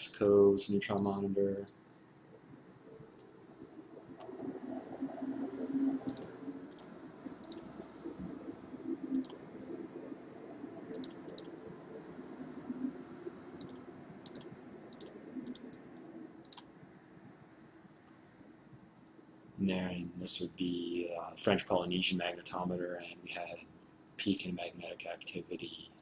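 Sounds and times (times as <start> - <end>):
faint low hum: 0.0 - 26.0
computer mouse clicking: 6.0 - 7.7, 9.1 - 9.4, 10.9 - 11.5, 13.6 - 15.8, 16.4 - 16.7.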